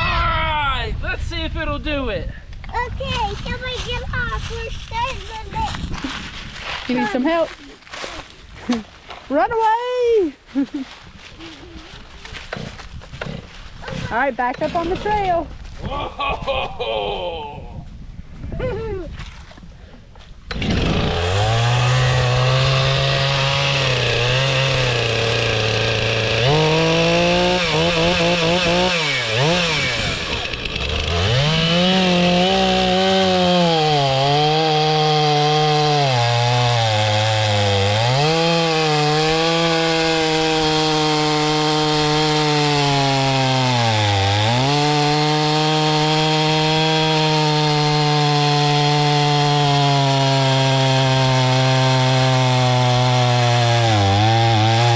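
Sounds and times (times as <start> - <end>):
chainsaw cutting wood: 12.3 - 15.4, 20.4 - 54.9.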